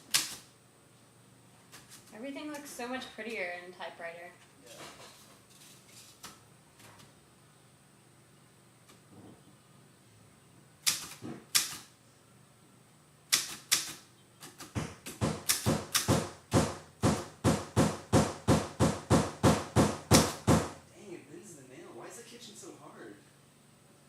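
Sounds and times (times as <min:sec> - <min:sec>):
hammer striking nail: 0:13.3 - 0:20.8.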